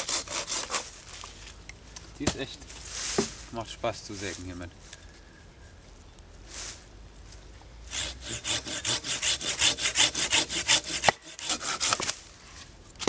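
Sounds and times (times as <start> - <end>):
hand saw cutting wood: 0.0 - 0.9, 7.9 - 12.2.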